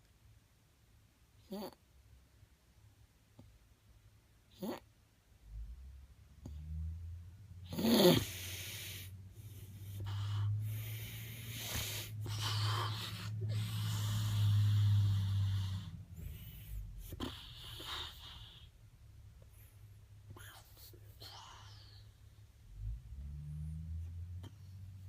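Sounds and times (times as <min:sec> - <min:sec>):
person snoring: 0:07.7 - 0:09.2, 0:10.0 - 0:18.7.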